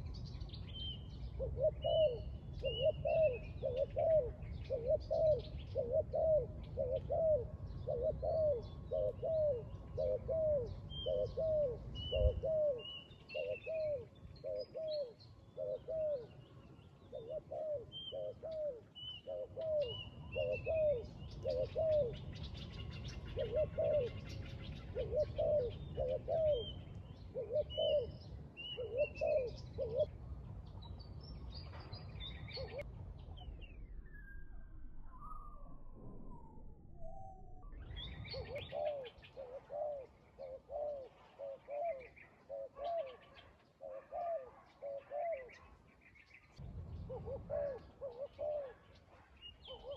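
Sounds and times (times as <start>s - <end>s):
doves cooing: 1.2s - 30.1s, 32.5s - 32.9s, 36.2s - 45.9s, 47.1s - 49.9s.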